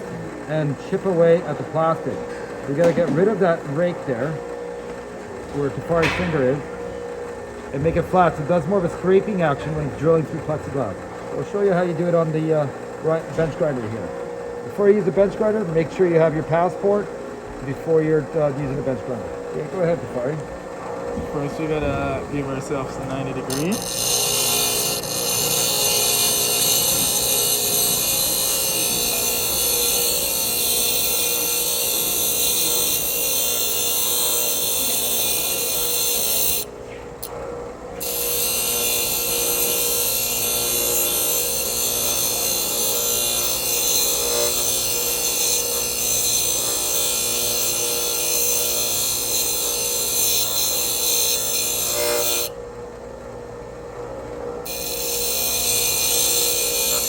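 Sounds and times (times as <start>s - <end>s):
bench grinder motor hum: 0.0s - 52.6s, 53.9s - 57.0s
drill bit grinding on wheel: 21.7s - 37.3s, 38.0s - 52.5s, 54.6s - 57.0s.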